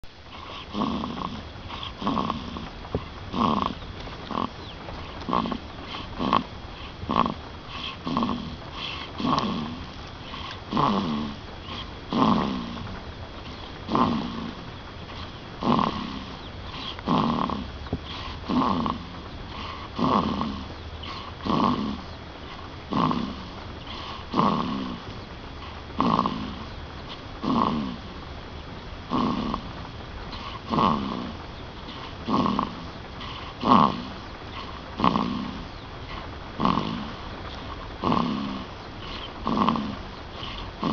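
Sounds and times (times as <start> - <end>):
person snoring: 0.3 - 2.7, 7.1 - 12.8, 15.6 - 16.4, 17.0 - 22.0, 22.9 - 25.0, 32.0 - 34.1, 38.0 - 40.9.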